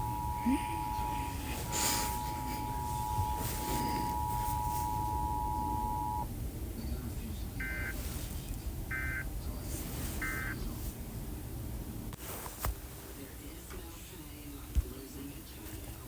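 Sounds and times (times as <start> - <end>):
digital data bursts: 0.0 - 6.2, 8.9 - 9.2, 10.2 - 10.6
two-pitch attention tone: 0.0 - 6.3
low hum: 0.0 - 10.8.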